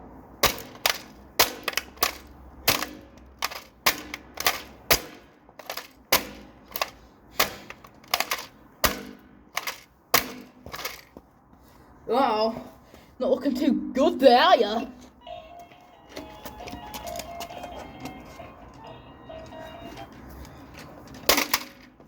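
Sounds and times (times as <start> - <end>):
plastic toy cash register struck: 0.4 - 11.0, 21.3 - 21.9.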